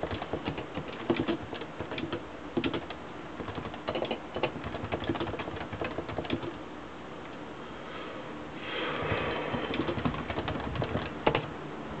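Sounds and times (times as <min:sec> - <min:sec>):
keyboard typing: 0:00.0 - 0:06.6, 0:09.5 - 0:11.5.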